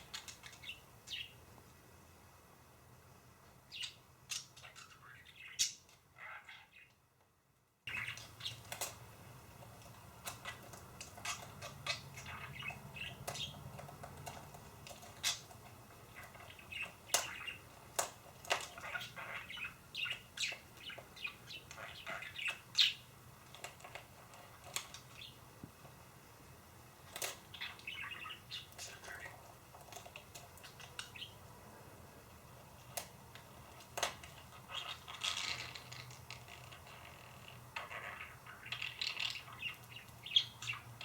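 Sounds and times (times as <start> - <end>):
budgerigar chirping: 11.2 - 13.6, 18.7 - 23.0, 37.8 - 41.0.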